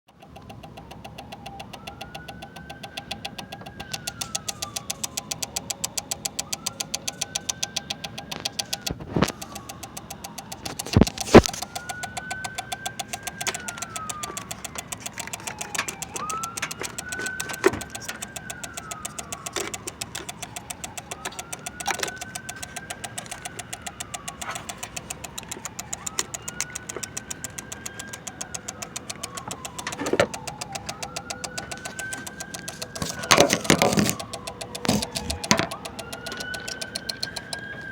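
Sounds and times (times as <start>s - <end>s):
rapid even clicking: 0.1s - 37.9s
rising and falling whine: 0.4s - 37.9s.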